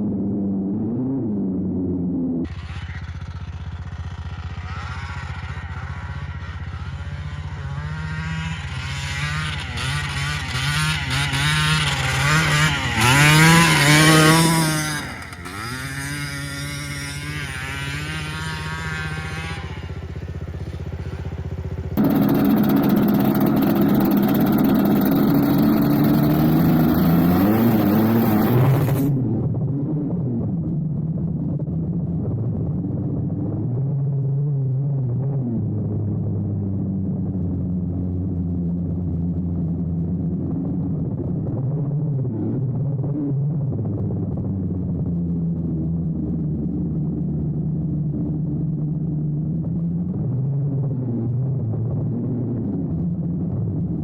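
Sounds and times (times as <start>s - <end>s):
two-stroke engine revving: 2.5s - 29.2s.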